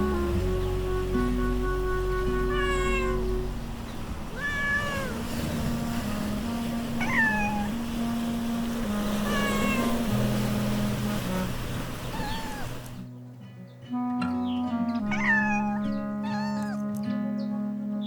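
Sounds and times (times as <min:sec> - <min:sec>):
background music with low notes: 0:00.0 - 0:03.8, 0:05.4 - 0:12.2, 0:13.0 - 0:18.0
cat meowing: 0:02.5 - 0:03.3, 0:04.3 - 0:05.3, 0:07.0 - 0:07.8, 0:09.2 - 0:10.0, 0:12.1 - 0:13.0, 0:15.0 - 0:16.9.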